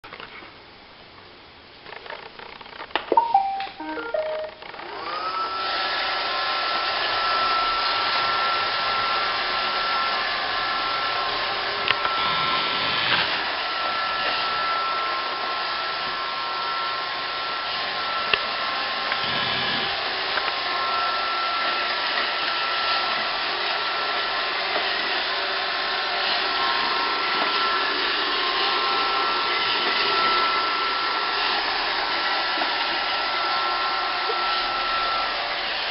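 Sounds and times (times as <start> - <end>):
short electronic tones: 3.1 - 4.8
robot vacuum motor whine: 4.6 - 35.9.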